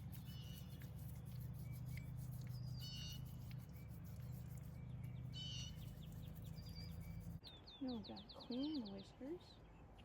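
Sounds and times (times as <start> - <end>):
low buzzing hum: 0.0 - 7.5
birds chirping: 0.0 - 10.0.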